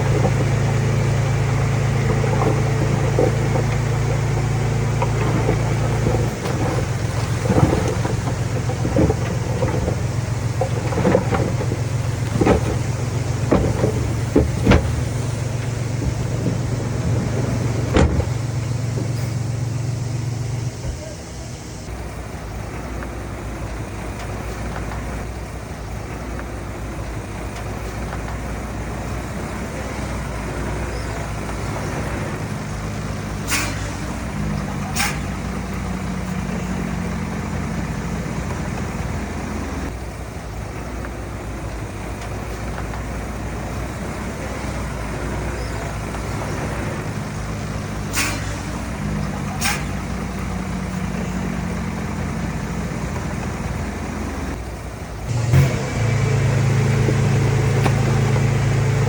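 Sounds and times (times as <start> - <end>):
diesel machinery engine running: 0.0 - 59.0
short sharp hissing or clanking: 33.4 - 34.2, 34.9 - 35.4, 48.1 - 48.8, 49.6 - 50.0.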